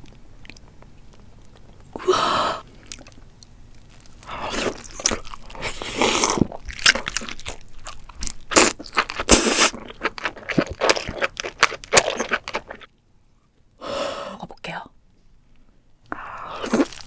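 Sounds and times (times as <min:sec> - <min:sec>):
crab shell cracking and crunching: 0:02.7 - 0:12.9.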